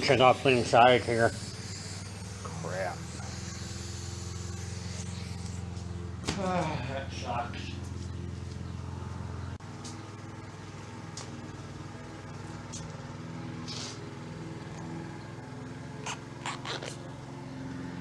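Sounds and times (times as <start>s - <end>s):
motor humming: 0.0s - 18.0s.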